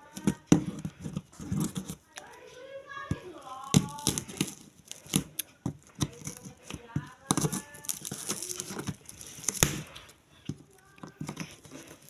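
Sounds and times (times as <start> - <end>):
clicks and knocks of fan parts: 0.0 - 2.3, 3.0 - 12.0
packaging crinkling: 0.0 - 12.0.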